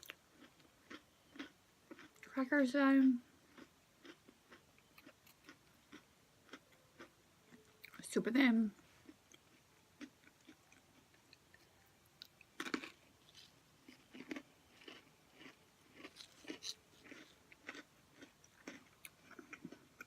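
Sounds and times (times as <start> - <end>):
crisps crunched between teeth: 12.2 - 20.0.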